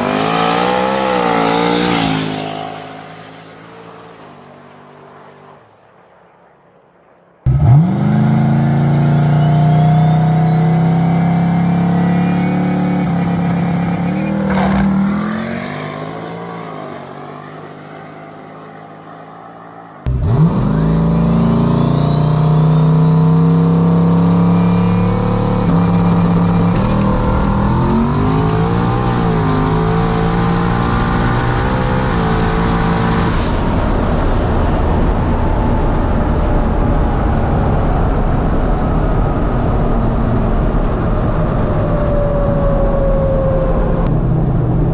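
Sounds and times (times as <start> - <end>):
engine running at full throttle: 7.5 - 15.5, 20.0 - 42.0
turbo whine: 7.5 - 16.2, 20.1 - 44.7.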